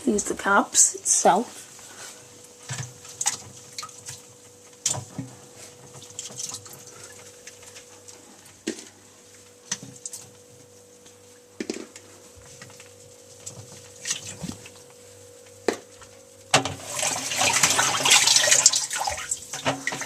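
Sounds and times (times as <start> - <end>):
faint steady hum: 0.0 - 20.0
washing machine water trickling: 2.3 - 8.6, 12.4 - 15.5, 16.4 - 20.0.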